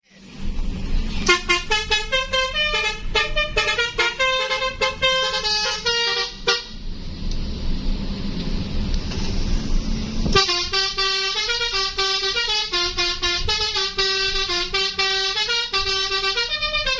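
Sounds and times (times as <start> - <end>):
low steady rumble: 0.1 - 16.9
musical bus horn tune: 1.2 - 6.8, 10.3 - 16.9.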